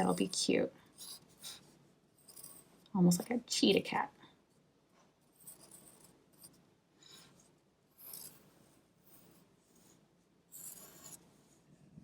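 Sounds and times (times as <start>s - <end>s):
pencil scratching on paper: 0.0s - 2.7s, 5.2s - 11.6s.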